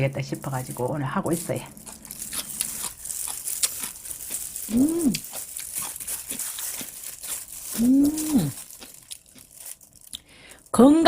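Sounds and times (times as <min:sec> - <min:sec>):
crunchy chewing: 0:01.2 - 0:10.3
person humming mmm: 0:04.6 - 0:05.4, 0:07.7 - 0:08.7.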